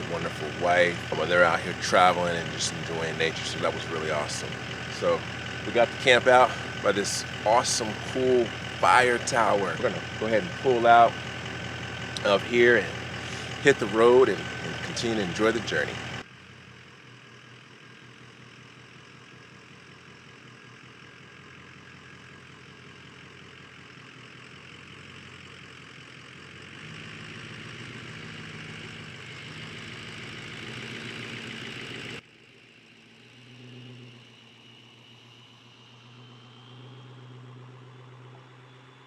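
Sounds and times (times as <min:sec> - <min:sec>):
road noise hiss: 0:00.0 - 0:16.2
vehicle engine driving off: 0:00.0 - 0:39.0.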